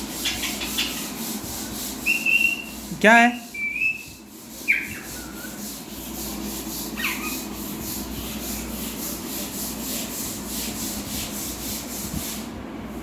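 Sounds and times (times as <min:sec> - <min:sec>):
bird chirp: 0:03.6 - 0:05.5
rhythmic scraping: 0:03.9 - 0:12.5.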